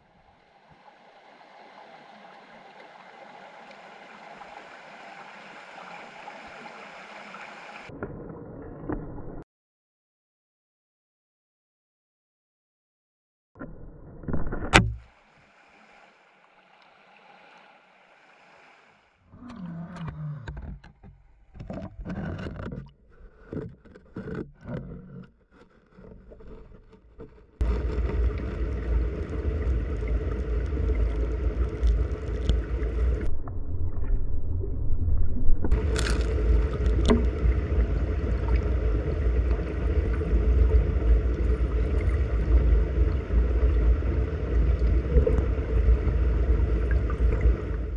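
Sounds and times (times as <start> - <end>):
stream water rushing underwater: 0.0 - 9.4, 13.7 - 20.6, 27.3 - 47.9
irregular knocks and splashes: 26.0 - 44.2.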